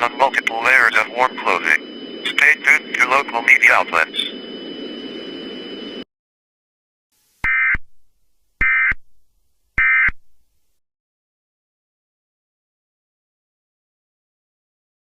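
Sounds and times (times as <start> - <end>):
digital data tone bursts: 0.0 - 5.7.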